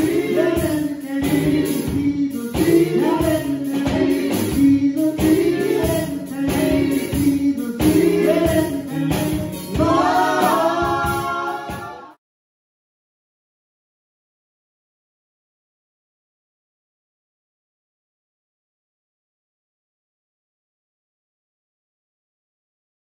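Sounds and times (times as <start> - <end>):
gospel singing over a beat: 0.0 - 12.2.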